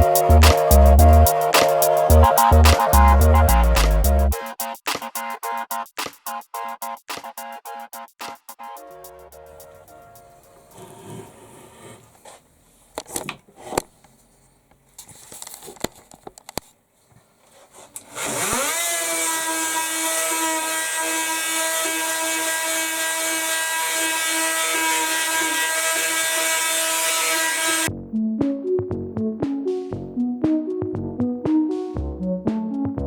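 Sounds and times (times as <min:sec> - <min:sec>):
power tool motor whining: 0:18.1 - 0:27.9.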